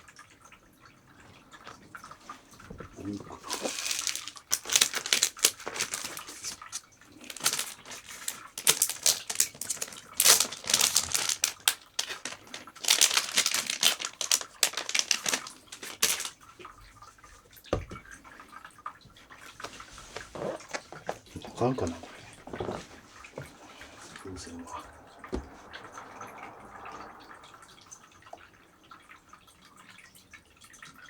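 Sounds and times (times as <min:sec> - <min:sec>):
material crinkling and rustling: 0:01.5 - 0:16.4, 0:19.2 - 0:24.3.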